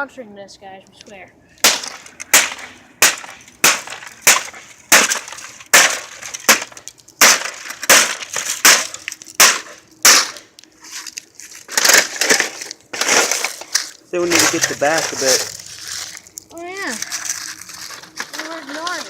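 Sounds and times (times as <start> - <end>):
hard blows smashing air conditioner: 1.6 - 10.5, 11.5 - 16.2
crunching clatter: 1.6 - 19.0
parts cracking and breaking: 1.6 - 19.0.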